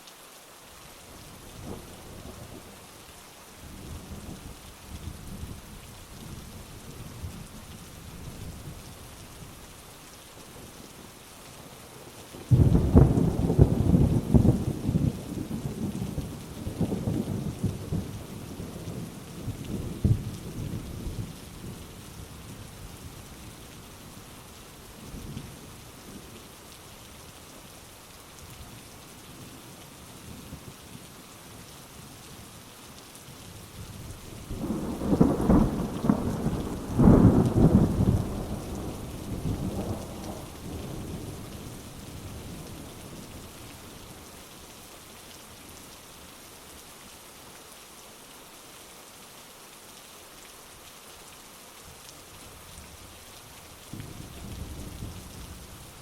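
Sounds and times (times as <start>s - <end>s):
heavy rain falling: 0.0s - 56.0s
thunder rumbling: 34.4s - 43.1s.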